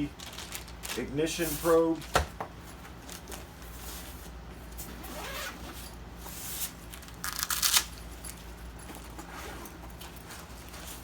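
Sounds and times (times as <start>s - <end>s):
bag rustling: 4.8s - 6.0s.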